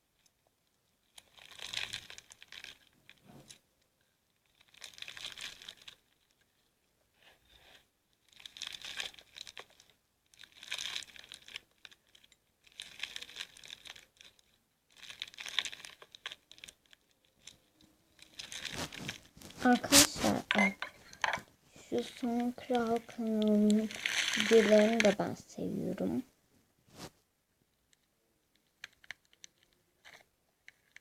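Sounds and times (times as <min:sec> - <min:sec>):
slime crackling being squeezed: 0:01.1 - 0:03.1, 0:04.4 - 0:06.3, 0:08.2 - 0:21.2, 0:21.9 - 0:25.2.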